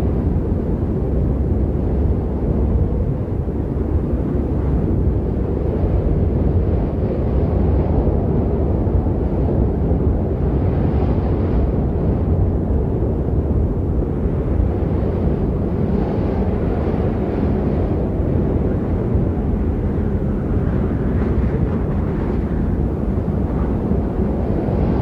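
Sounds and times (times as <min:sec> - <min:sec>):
low wind rumble: 0:00.0 - 0:25.0.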